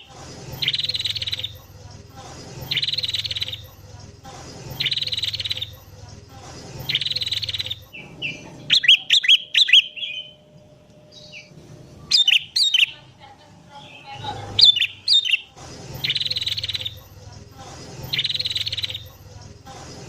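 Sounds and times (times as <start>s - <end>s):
bulbul song with trills and whistles: 0.0s - 1.7s, 2.6s - 3.7s, 4.7s - 5.8s, 6.8s - 13.0s, 13.9s - 17.1s, 18.0s - 19.3s.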